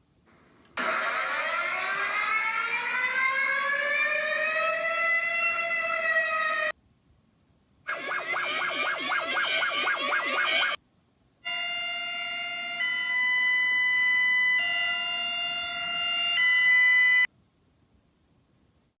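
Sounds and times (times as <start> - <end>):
steady electronic chord: 7.9 - 10.8
warbling electronic tone: 7.9 - 10.8.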